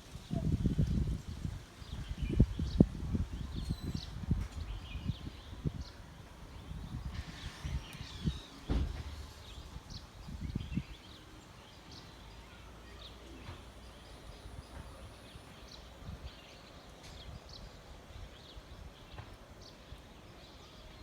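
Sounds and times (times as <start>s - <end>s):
birds chirping: 3.4s - 21.0s.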